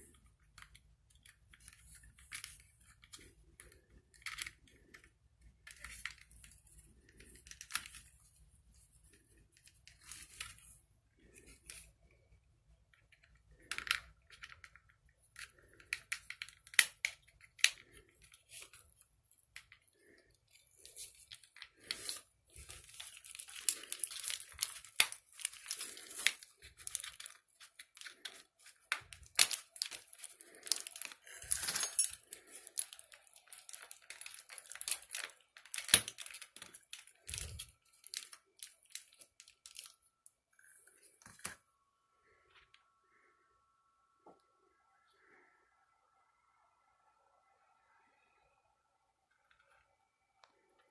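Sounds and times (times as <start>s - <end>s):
scraping and crinkling rustle: 17.5s - 40.0s.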